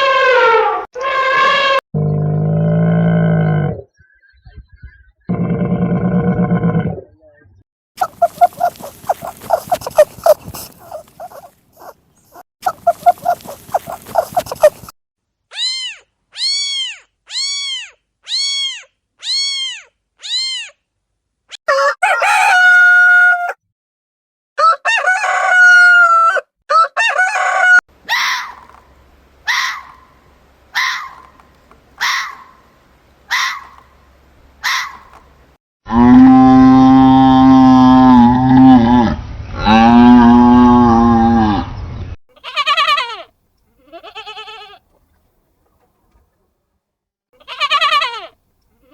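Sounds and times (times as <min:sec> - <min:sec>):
rapid pulsing animal calls: 0:08.0 - 0:14.9
short animal calls: 0:08.0 - 0:14.9
rooster crowing: 0:21.7 - 0:23.6, 0:24.6 - 0:26.4.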